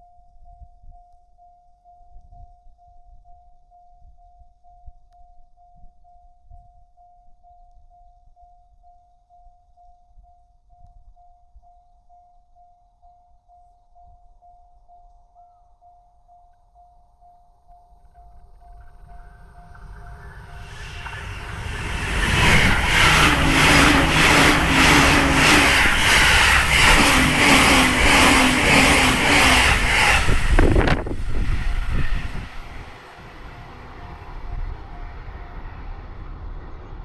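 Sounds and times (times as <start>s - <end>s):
train rumble: 18.1s - 37.0s.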